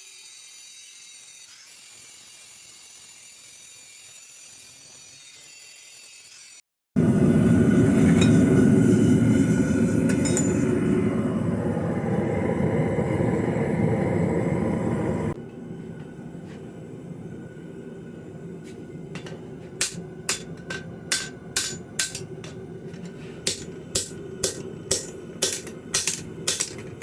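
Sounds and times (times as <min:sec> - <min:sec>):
hammer striking steel on anvil: 0:08.1 - 0:08.5, 0:10.1 - 0:10.7, 0:19.2 - 0:27.0.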